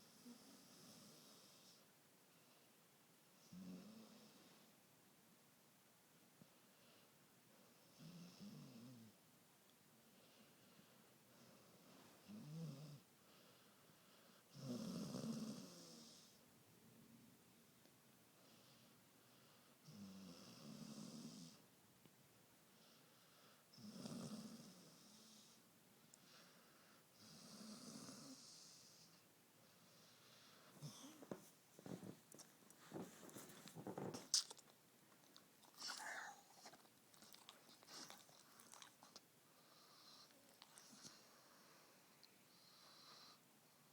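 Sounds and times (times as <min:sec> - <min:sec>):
dog snoring: 0:03.4 - 0:04.5, 0:07.9 - 0:09.2, 0:12.2 - 0:13.1, 0:14.5 - 0:16.4, 0:19.8 - 0:21.6, 0:23.7 - 0:25.6, 0:27.2 - 0:29.2, 0:30.7 - 0:34.4, 0:35.6 - 0:41.8.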